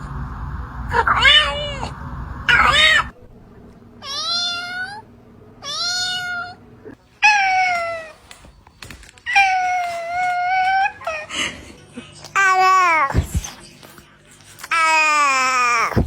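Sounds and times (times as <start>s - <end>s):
cat meowing: 2.5s - 3.2s, 4.0s - 5.0s, 5.6s - 6.6s.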